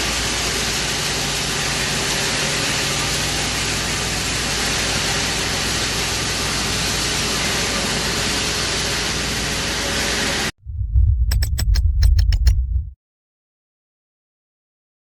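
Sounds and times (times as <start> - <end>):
grinding mill running: 0.0 - 10.5
low rumble: 10.5 - 13.0
sharp clicks: 11.1 - 13.0.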